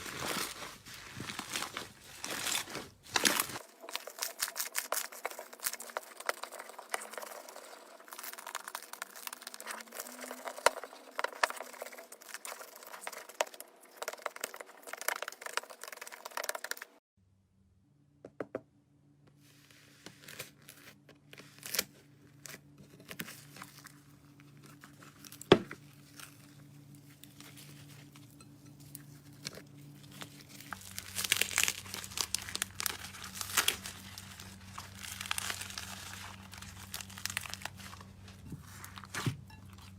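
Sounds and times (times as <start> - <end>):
slime crackling and popping: 30.0 - 38.3.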